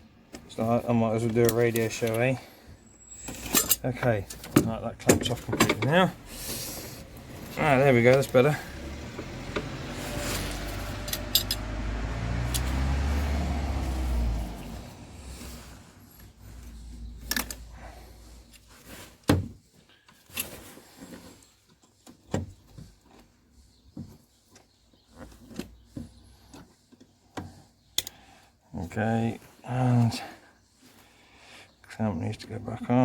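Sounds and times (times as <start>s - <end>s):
rustling handling noise: 0.3s - 27.2s
metallic clicks from hand tools: 11.0s - 11.7s, 12.5s - 12.7s, 28.0s - 28.2s.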